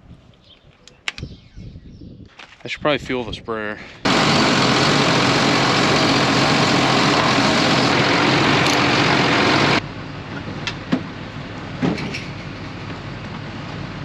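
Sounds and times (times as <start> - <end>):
sharp clicks: 0.8 - 1.3
heavy engine running: 4.0 - 14.0.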